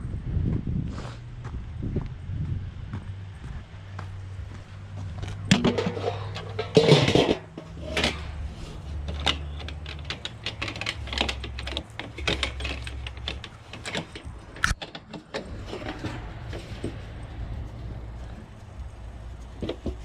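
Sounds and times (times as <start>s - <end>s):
sharp clicks and knocks: 5.1s - 17.4s
low uneven rumble: 15.4s - 20.0s.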